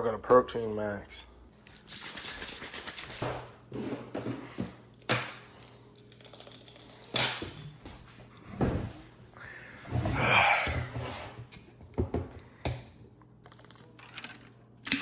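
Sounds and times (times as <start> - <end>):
small tools clicking and rustling: 4.8 - 7.4.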